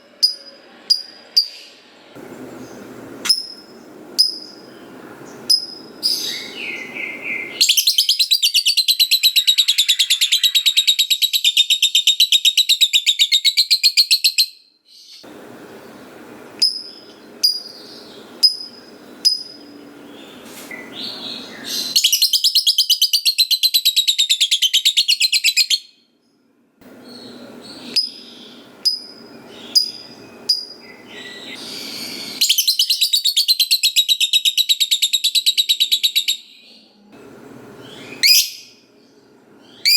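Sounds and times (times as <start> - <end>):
lovebird chattering call: 2.6 - 14.5, 16.6 - 25.7, 27.1 - 36.3
sharp bird chirps: 2.6 - 15.2.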